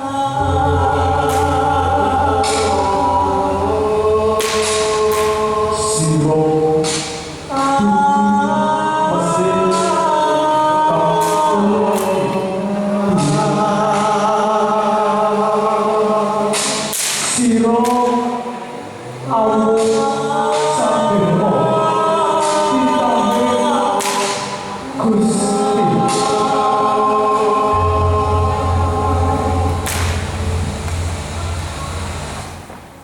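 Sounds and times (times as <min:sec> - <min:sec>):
group of voices chanting: 0:00.0 - 0:07.8.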